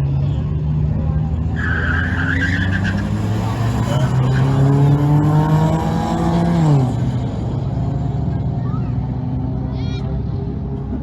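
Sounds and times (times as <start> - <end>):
race car engine accelerating: 0.3 - 9.7
tire squeal: 1.5 - 5.3.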